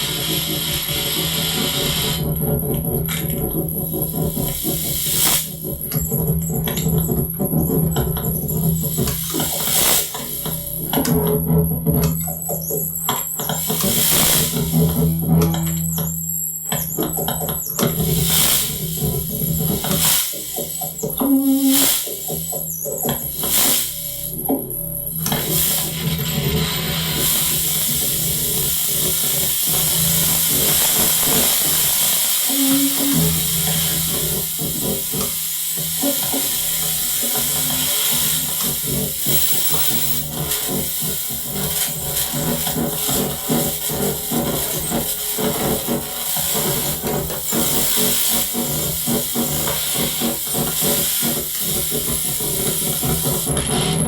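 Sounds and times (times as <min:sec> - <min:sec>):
low hum tones: 0:01.3 - 0:18.2, 0:32.5 - 0:40.6
dense electronic crackling: 0:01.3 - 0:54.0
steady high hiss: 0:21.3 - 0:22.4, 0:25.3 - 0:53.3
high thin whine: 0:25.2 - 0:53.6.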